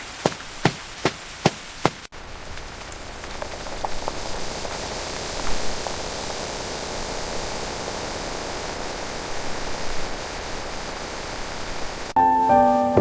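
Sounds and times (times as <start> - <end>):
steady rain hiss: 0.0 - 13.0
soft piano notes: 12.2 - 13.0.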